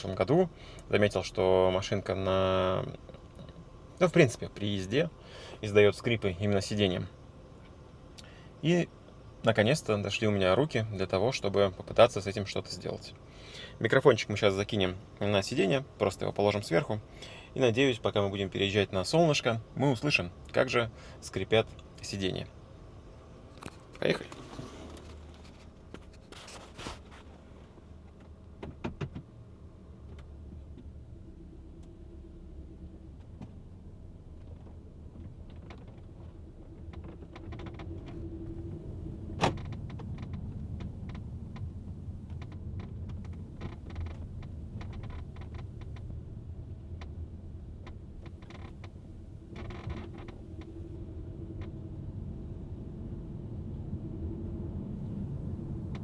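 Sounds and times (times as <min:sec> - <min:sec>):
road and drivetrain rumble: 0:19.6 - 0:56.0
seats creaking and clicking: 0:23.6 - 0:27.3, 0:34.4 - 0:46.2, 0:47.8 - 0:51.8, 0:55.0 - 0:56.0.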